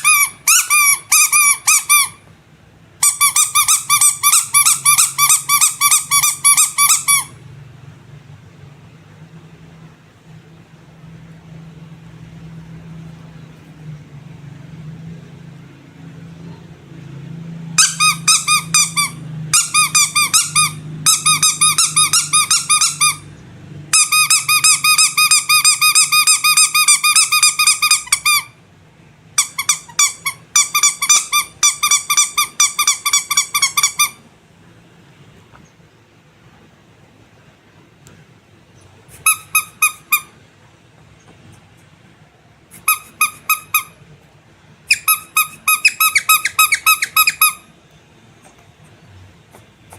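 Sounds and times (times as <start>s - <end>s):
rubber squeaky toys squeaking: 0.0s - 2.2s, 3.0s - 7.4s, 17.8s - 23.3s, 23.9s - 28.6s, 29.4s - 34.2s, 39.1s - 40.4s, 42.7s - 44.0s, 44.8s - 47.7s.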